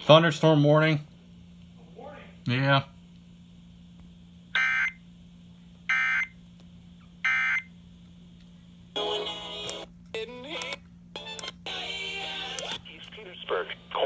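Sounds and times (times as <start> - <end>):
faint steady hum: 0.0 - 14.0
radio audio: 11.7 - 14.0.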